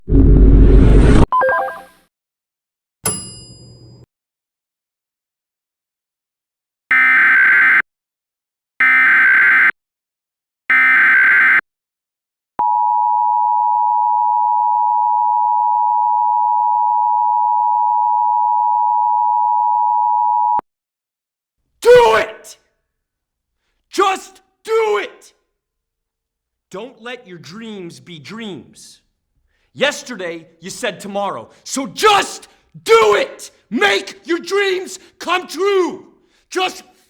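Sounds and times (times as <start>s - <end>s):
two-note alert beep: 1.4s - 1.9s.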